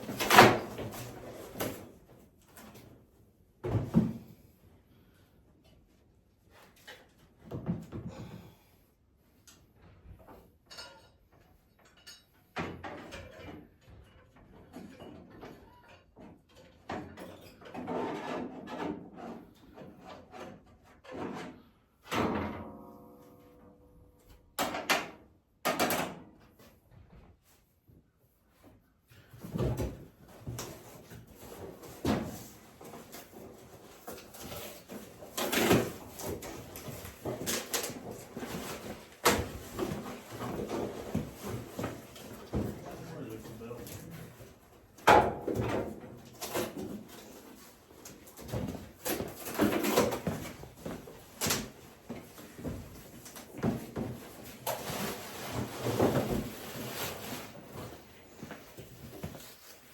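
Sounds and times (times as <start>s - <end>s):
objects knocking and scraping: 10.2s - 22.7s, 29.2s - 59.9s.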